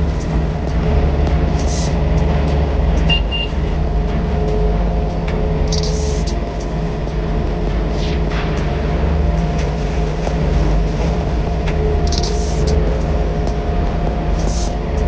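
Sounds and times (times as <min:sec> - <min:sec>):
excavator diesel engine running: 0:00.0 - 0:15.0
short beeps: 0:03.1 - 0:03.6.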